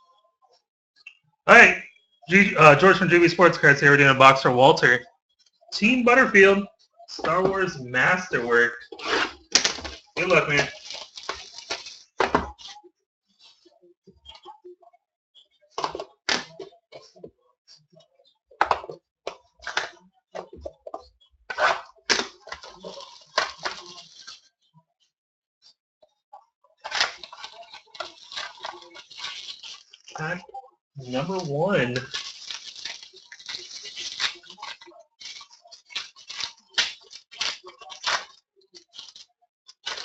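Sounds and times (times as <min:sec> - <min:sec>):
packaging crinkling and tearing: 0:07.3 - 0:12.7, 0:21.5 - 0:24.4, 0:26.9 - 0:30.3, 0:31.0 - 0:40.0.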